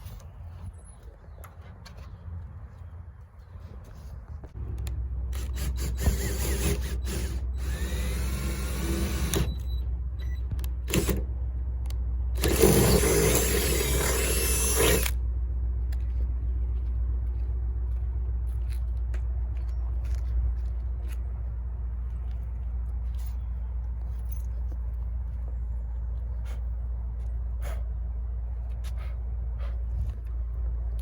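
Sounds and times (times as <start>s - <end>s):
steady low hum: 0.0s - 31.0s
power drill whining: 5.3s - 9.7s, 10.9s - 11.2s, 12.4s - 15.2s.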